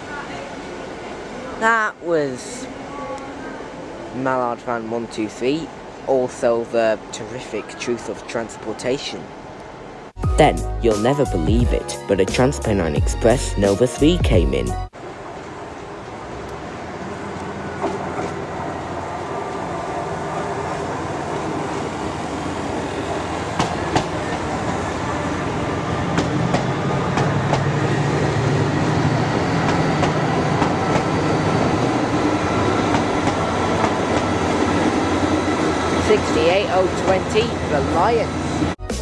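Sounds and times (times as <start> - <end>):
diesel locomotive engine hum: 9.6 - 38.9.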